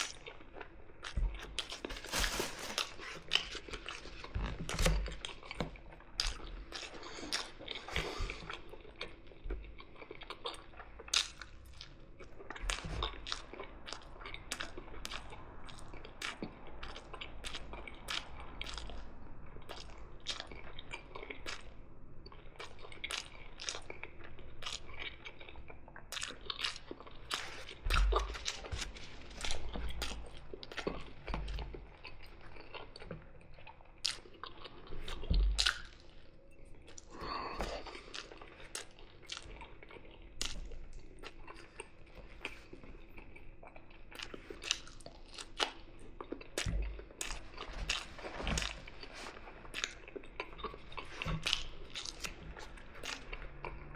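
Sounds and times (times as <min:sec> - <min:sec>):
person chewing food: 0:00.0 - 0:53.9
wet mouth clicks and crunches: 0:49.7 - 0:53.9.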